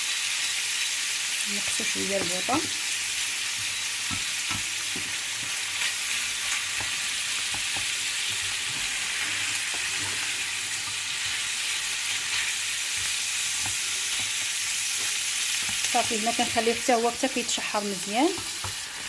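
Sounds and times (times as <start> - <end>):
squid sizzling in a pan: 0.0 - 19.0.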